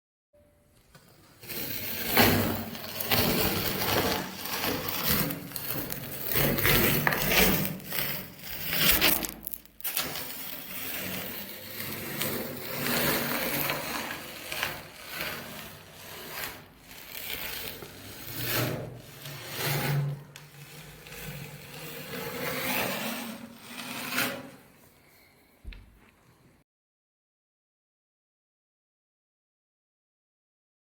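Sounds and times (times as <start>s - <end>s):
toy bulldozer crushing biscuits: 1.4s - 24.1s.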